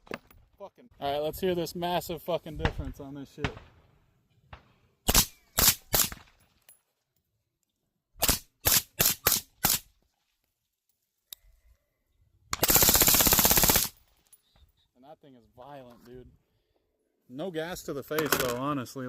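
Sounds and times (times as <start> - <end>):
rifle shots: 5.1 - 6.4, 8.2 - 9.9, 12.5 - 14.0.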